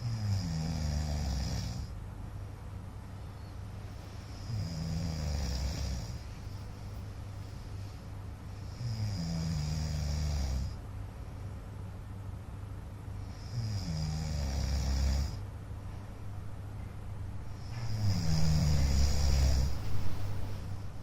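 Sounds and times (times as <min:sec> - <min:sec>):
man snoring: 0:00.0 - 0:01.9, 0:04.3 - 0:06.2, 0:08.6 - 0:10.8, 0:13.2 - 0:15.4, 0:17.5 - 0:20.4
steady low background hum: 0:00.0 - 0:21.0.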